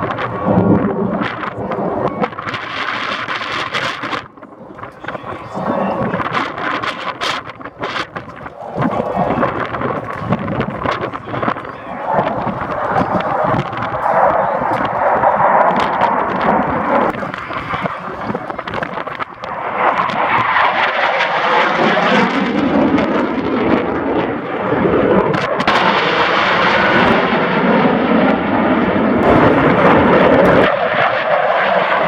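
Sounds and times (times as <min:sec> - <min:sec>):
jet engine flying overhead: 0:00.0 - 0:32.0.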